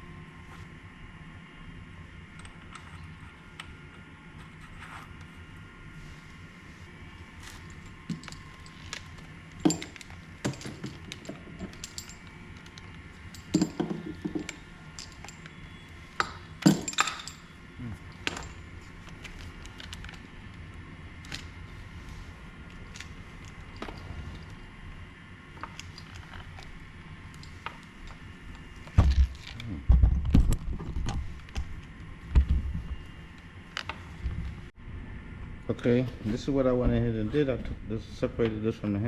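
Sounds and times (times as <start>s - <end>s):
metallic clinks of bicycle parts: 7.8s - 17.5s.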